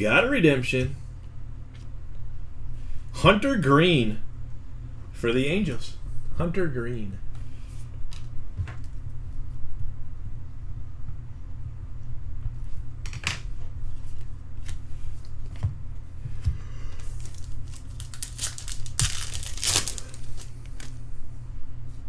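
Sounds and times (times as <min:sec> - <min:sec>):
steady low hum: 0:00.0 - 0:22.0
wrappers tearing and crinkling: 0:17.0 - 0:21.0.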